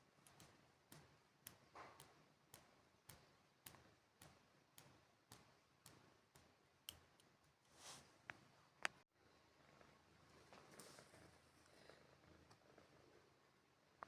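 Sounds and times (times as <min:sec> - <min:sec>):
faint regular ticking: 0:00.0 - 0:07.6.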